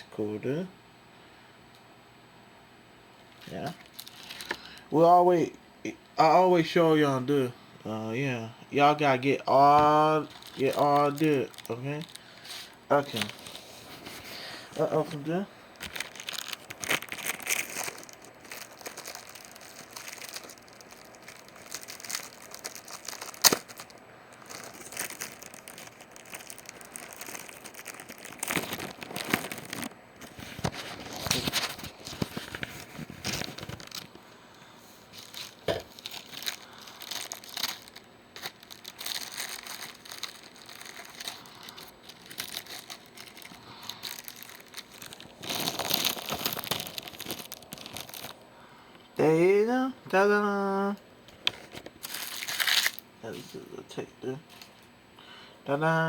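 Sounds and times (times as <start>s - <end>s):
plastic and cardboard crinkling: 3.4s - 4.8s, 9.5s - 34.3s, 35.0s - 48.4s, 51.4s - 53.6s.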